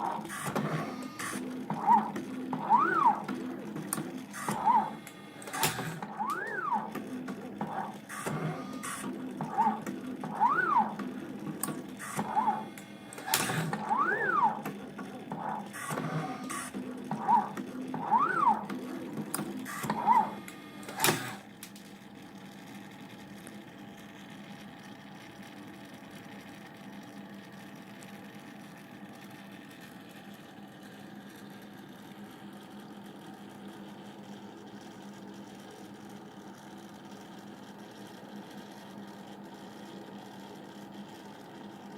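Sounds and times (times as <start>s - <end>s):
machine motors whining: 0.0s - 21.5s
machine clicks: 0.0s - 21.8s.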